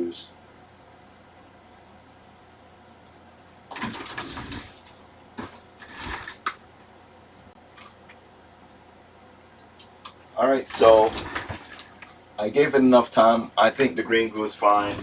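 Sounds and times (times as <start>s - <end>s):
packaging rustling: 3.7s - 6.6s, 10.7s - 12.1s, 14.6s - 15.0s.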